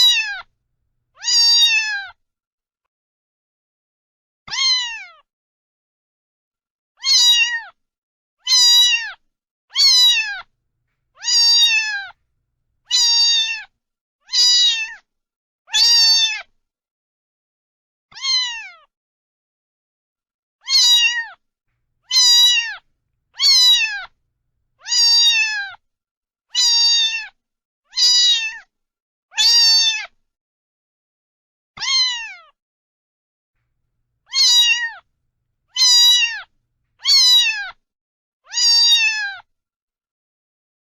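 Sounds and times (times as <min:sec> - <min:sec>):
cat meowing: 0:00.0 - 0:00.5, 0:01.2 - 0:02.1, 0:04.5 - 0:05.2, 0:07.0 - 0:07.7, 0:08.5 - 0:09.2, 0:09.8 - 0:10.5, 0:11.2 - 0:12.2, 0:12.9 - 0:13.7, 0:14.3 - 0:15.0, 0:18.1 - 0:18.8, 0:20.6 - 0:21.4, 0:22.0 - 0:24.2, 0:24.8 - 0:25.8, 0:26.6 - 0:27.3, 0:27.9 - 0:28.6, 0:31.8 - 0:32.5, 0:34.3 - 0:35.0, 0:35.7 - 0:37.7, 0:38.5 - 0:39.4.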